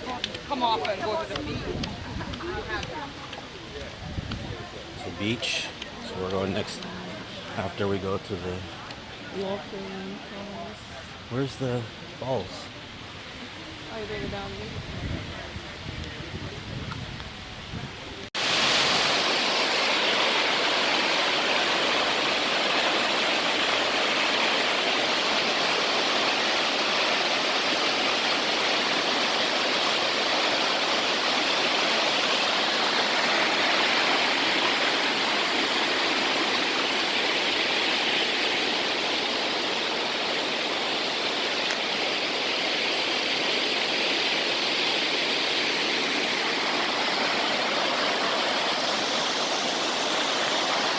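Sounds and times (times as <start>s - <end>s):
waterfall rushing over rock: 18.3s - 50.9s.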